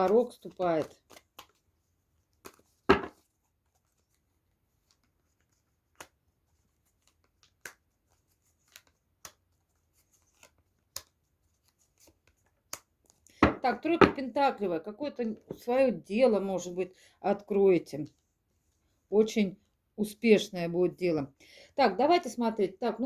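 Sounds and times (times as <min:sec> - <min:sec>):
cards snapping and tapping on table: 0:02.4 - 0:03.2.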